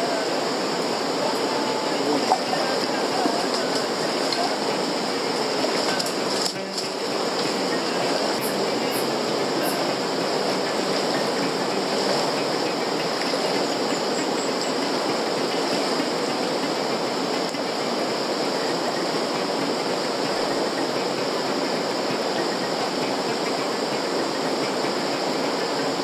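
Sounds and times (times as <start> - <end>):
steady rushing noise: 0.0 - 26.0.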